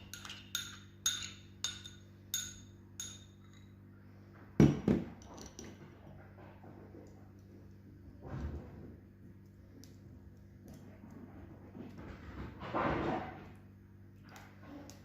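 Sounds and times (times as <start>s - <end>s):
metal strainer clinking on bowl: 0.0s - 3.6s.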